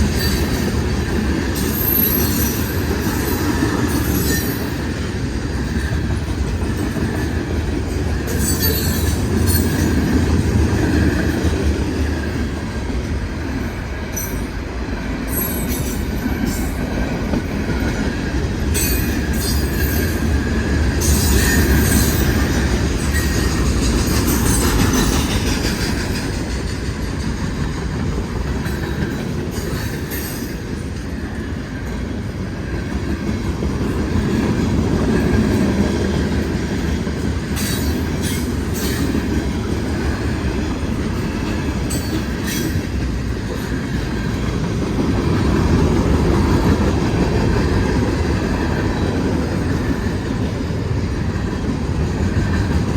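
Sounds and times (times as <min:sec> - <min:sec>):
train wheels rumbling on rail: 0:00.0 - 0:52.9
high-pitched wheel squeals: 0:01.6 - 0:04.8.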